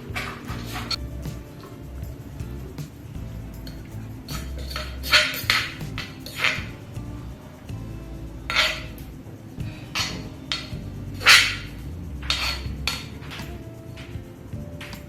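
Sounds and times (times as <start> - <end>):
utensils clinking against dishes: 0.0 - 7.8.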